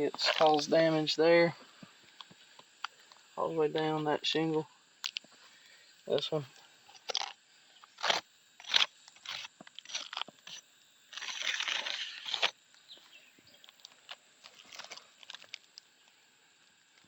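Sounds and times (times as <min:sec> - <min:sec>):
roof shingles crackling: 0:07.0 - 0:12.6.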